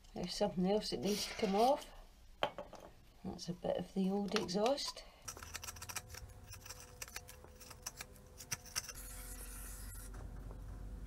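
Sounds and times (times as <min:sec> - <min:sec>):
hand tools clicking and scraping metal: 0:05.2 - 0:10.1.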